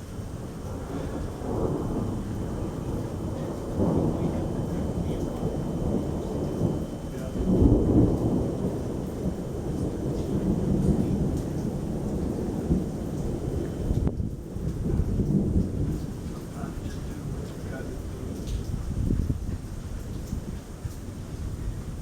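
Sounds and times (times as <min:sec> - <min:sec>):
steady rain: 0:00.0 - 0:22.0
thunder rumbling: 0:00.0 - 0:22.0.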